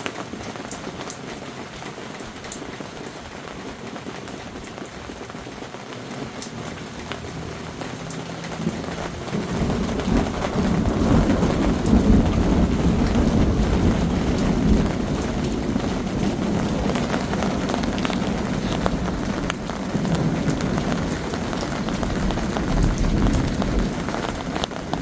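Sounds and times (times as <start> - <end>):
heavy rain falling: 0.0 - 25.0
thunder rumbling: 6.0 - 25.0.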